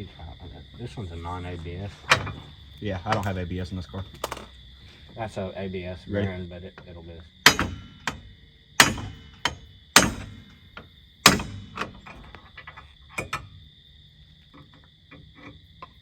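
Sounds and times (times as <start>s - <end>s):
hammer striking metal: 7.4s - 12.3s.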